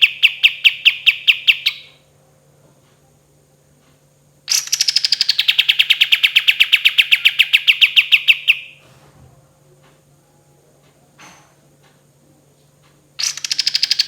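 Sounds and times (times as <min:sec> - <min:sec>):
songbird rapid trill: 0:00.0 - 0:02.0, 0:04.5 - 0:08.8, 0:13.2 - 0:14.0.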